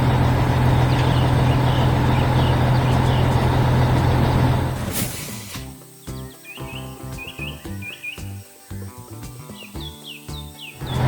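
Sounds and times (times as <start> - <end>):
truck diesel engine drone: 0.0 - 5.6
short hiss: 4.8 - 6.2.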